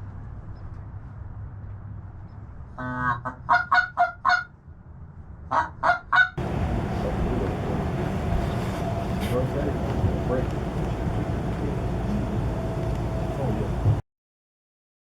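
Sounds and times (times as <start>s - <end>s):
goose honking: 2.8s - 4.4s
steady rushing noise: 6.4s - 14.0s.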